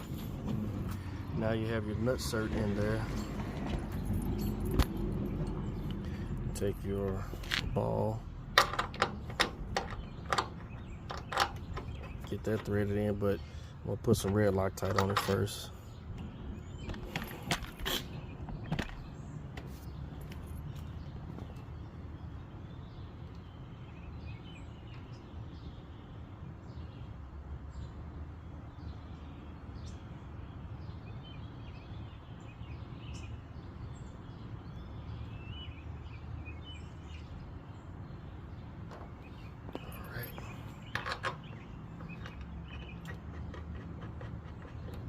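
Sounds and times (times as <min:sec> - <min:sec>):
low outdoor rumble: 0:00.0 - 0:22.5
birds chirping: 0:00.0 - 0:45.0.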